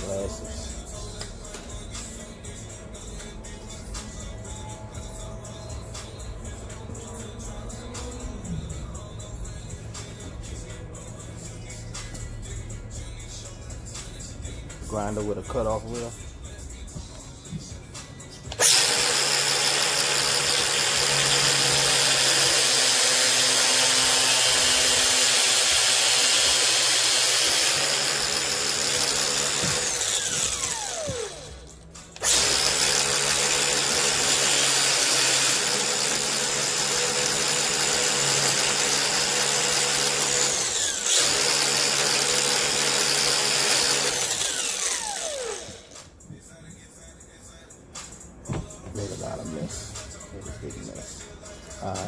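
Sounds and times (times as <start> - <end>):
angle grinder cutting steel hose: 18.5 - 31.6, 32.2 - 46.0.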